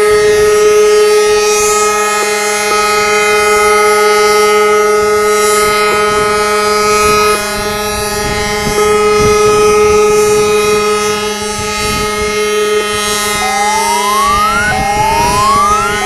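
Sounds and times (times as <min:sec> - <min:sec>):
ship horns blowing: 0:00.0 - 0:16.0
faint rising siren whoop: 0:08.4 - 0:16.0.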